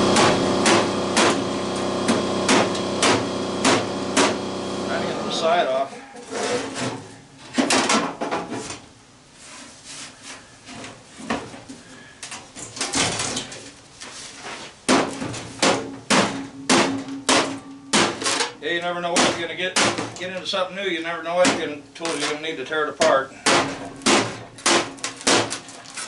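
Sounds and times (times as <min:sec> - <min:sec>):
metal clanks and knocks: 0:15.0 - 0:18.6.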